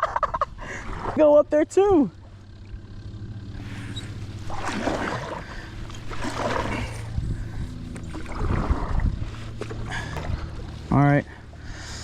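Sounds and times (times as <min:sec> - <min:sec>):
low hum: 0:00.0 - 0:12.0
paddle splashing in water: 0:03.6 - 0:10.9.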